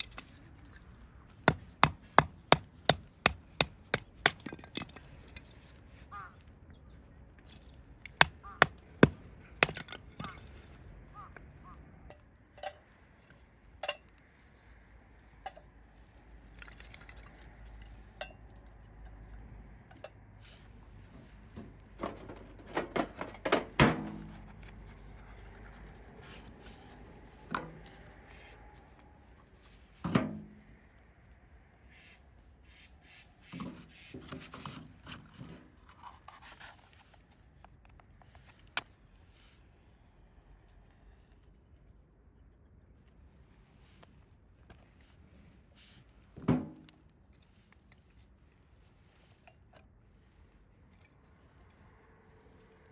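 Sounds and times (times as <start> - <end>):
camp gear and cookware clinking: 0.0 - 6.3, 7.4 - 11.3, 12.1 - 14.2, 20.5 - 28.2.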